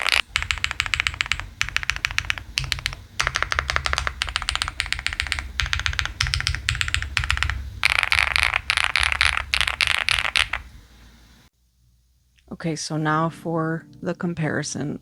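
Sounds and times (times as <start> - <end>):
mechanical keyboard typing: 0.0 - 10.7.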